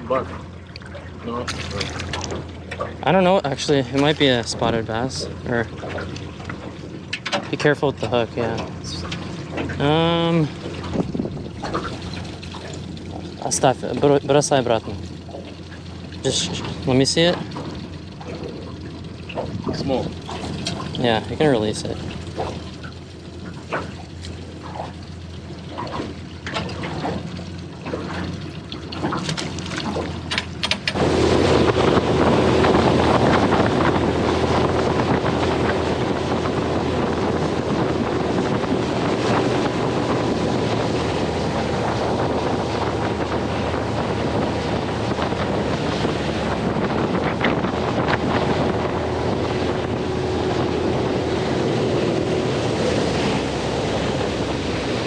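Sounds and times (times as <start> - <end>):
small boat motor running: 0.0 - 55.0
wind noise on microphone: 1.5 - 14.2, 28.1 - 55.0.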